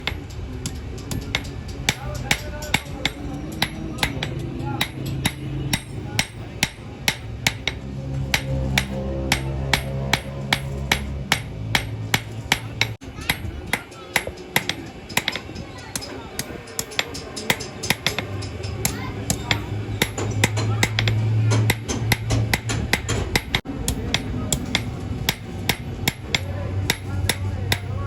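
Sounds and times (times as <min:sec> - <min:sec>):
low sustained hum: 0:00.0 - 0:16.2
hammer striking steel on anvil: 0:00.0 - 0:28.0.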